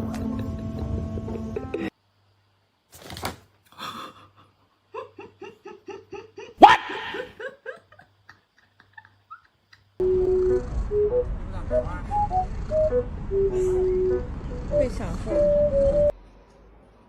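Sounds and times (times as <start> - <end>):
background music: 0.0 - 1.9, 10.0 - 16.1
person laughing: 0.0 - 1.9, 3.8 - 10.0.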